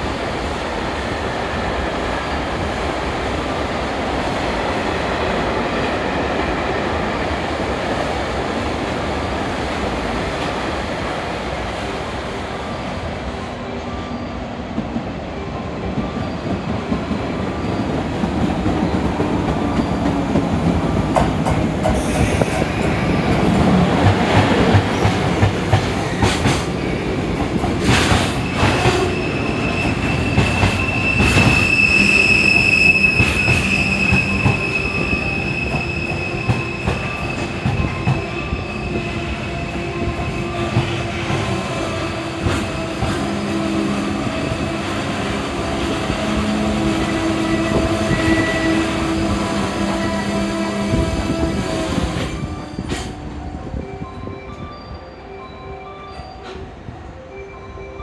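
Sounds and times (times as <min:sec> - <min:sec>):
high-pitched wheel squeal: 0:28.3 - 0:41.5.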